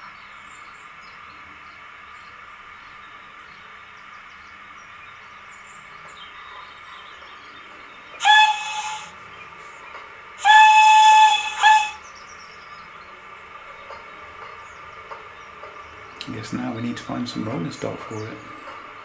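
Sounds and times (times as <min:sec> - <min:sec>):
steam whistle through small speaker: 0:08.2 - 0:09.2, 0:10.4 - 0:12.0.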